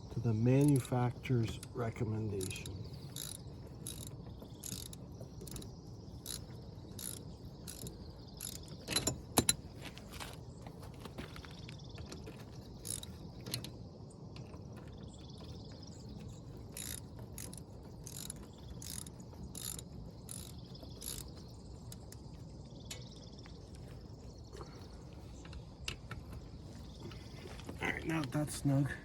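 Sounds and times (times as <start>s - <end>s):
ratchet wrench clicking: 2.4s - 9.6s, 16.8s - 21.3s.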